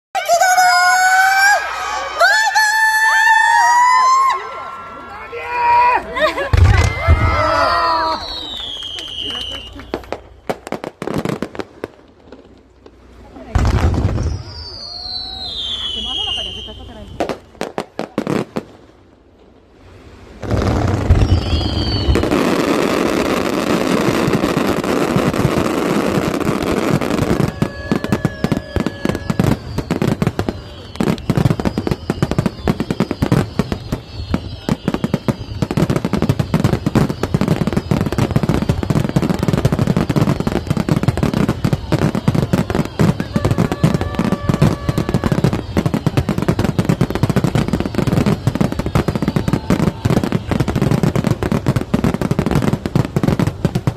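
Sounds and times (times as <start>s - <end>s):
crackling firework bursts: 0.2s - 53.9s
firework boom: 6.3s - 8.6s, 20.4s - 25.6s
falling firework whistles: 6.3s - 11.4s, 13.6s - 18.4s, 20.3s - 53.9s.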